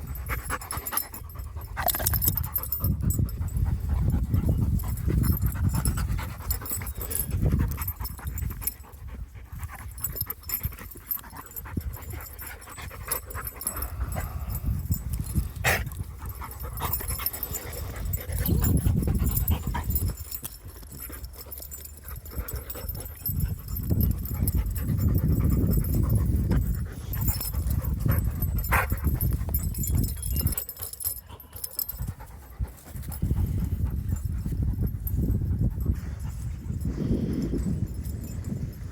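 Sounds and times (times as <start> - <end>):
dog panting: 0.0 - 36.8.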